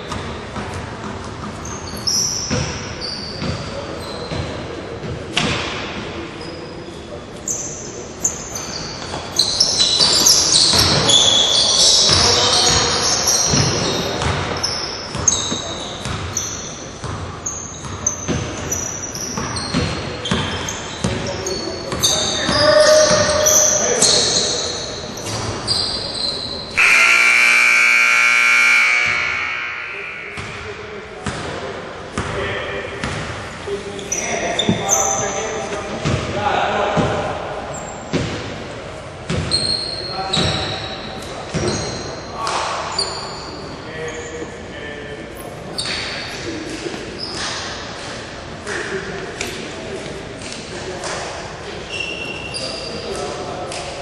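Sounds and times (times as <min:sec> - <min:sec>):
basketball bouncing on gym floor: 0:03.4 - 0:03.7, 0:13.5 - 0:16.4, 0:17.0 - 0:18.8, 0:30.3 - 0:32.4, 0:39.3 - 0:39.6
scoreboard horn buzzing: 0:26.8 - 0:31.1.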